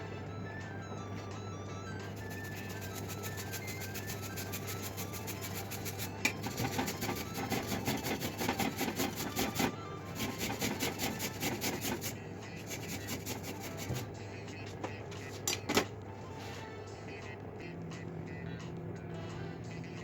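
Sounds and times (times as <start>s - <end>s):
food grated on metal grater: 2.1s - 14.1s.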